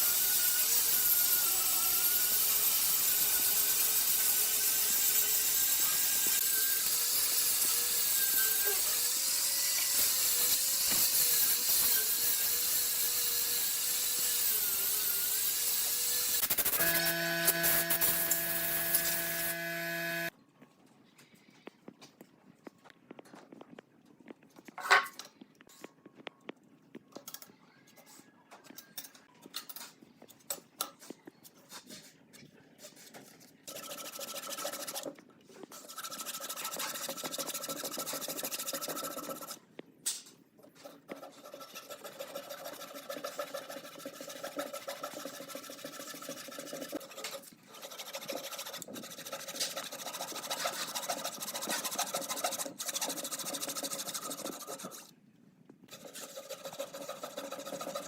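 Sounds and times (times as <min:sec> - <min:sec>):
electric power tool working wood: 0:00.0 - 0:20.3.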